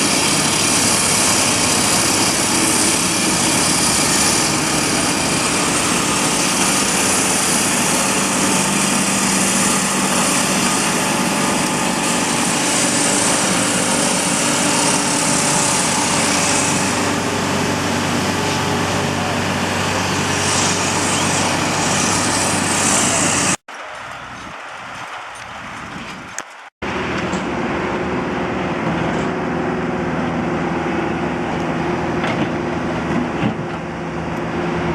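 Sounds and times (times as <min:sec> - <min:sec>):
loud hiss: 0:00.0 - 0:23.6
backhoe engine running: 0:00.0 - 0:34.9.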